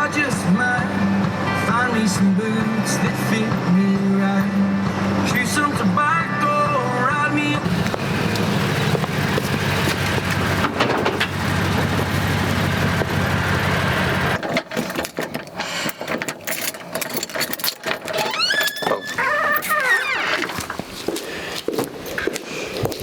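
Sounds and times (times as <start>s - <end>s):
vehicle engine and road noise: 0.0s - 22.2s
clicks and knocks: 7.8s - 11.4s.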